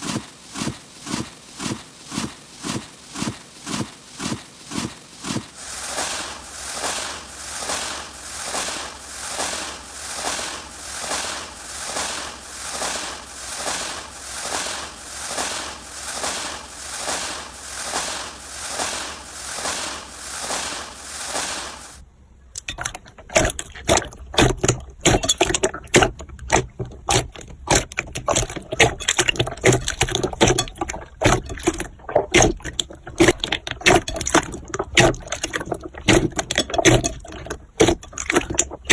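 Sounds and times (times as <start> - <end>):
slime crackling and popping: 22.6 - 38.9
slime squishing: 22.6 - 38.9.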